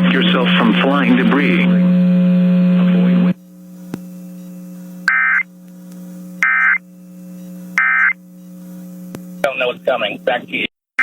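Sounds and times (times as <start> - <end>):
steady low hum: 0.0 - 10.7
digital data tone bursts: 5.1 - 5.5, 6.4 - 6.8, 7.8 - 8.2.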